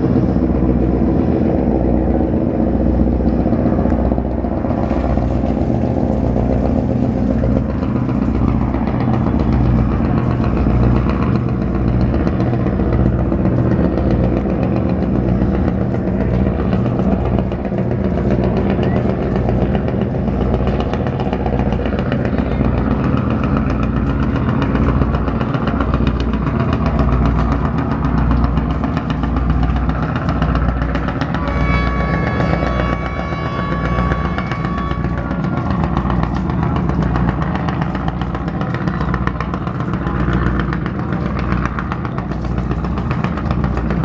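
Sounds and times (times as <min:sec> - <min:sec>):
engine running steadily: 0:00.0 - 0:44.0
held musical notes: 0:30.9 - 0:36.7.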